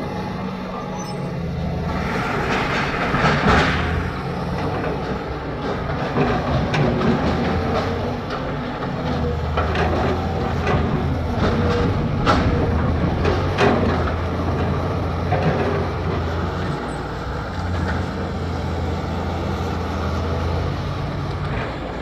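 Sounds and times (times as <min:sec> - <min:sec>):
diesel engine under load: 0:00.0 - 0:22.0
metal knocks and clanks: 0:01.9 - 0:16.9.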